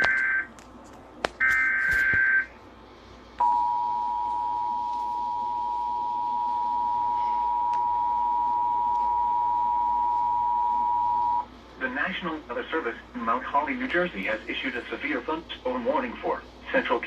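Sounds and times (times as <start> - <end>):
steady two-tone alert signal: 3.4 - 11.4.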